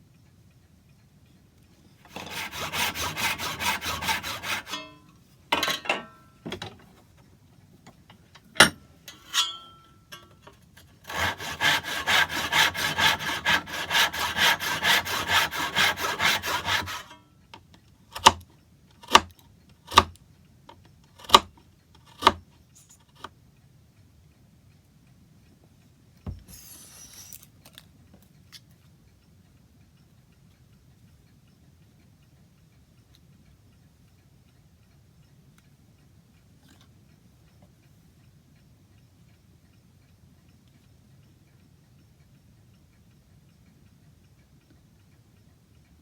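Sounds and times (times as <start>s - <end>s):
hand saw cutting wood: 2.1s - 5.1s, 10.8s - 17.2s, 21.2s - 21.5s, 22.1s - 22.4s.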